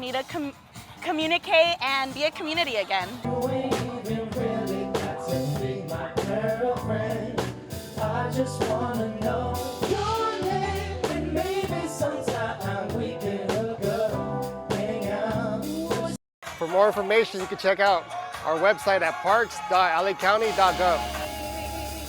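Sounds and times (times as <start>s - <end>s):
song with singer and band: 3.1s - 16.2s, 20.4s - 22.0s.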